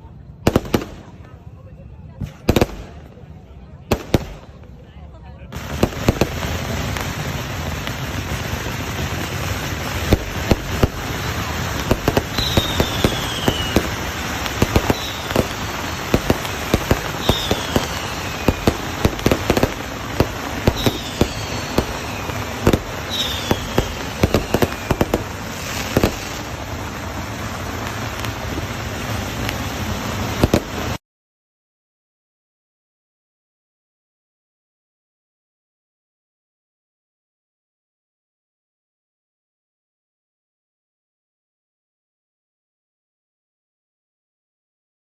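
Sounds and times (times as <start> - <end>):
firecrackers crackling: 0.0 - 31.0
firework bangs: 0.2 - 1.5, 2.1 - 31.0
falling firework whistles: 5.6 - 31.0.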